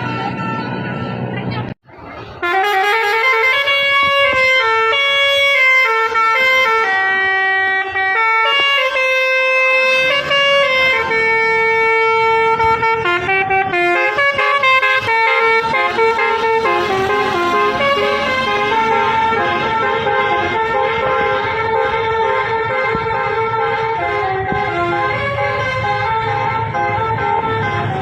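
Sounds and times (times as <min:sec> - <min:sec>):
bus horn playing a tune: 0:00.0 - 0:01.3, 0:02.3 - 0:28.0.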